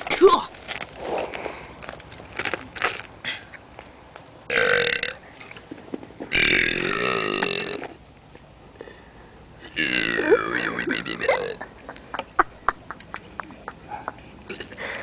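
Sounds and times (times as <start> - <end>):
man burping loudly: 4.5 - 5.2, 6.3 - 7.9, 9.6 - 11.6.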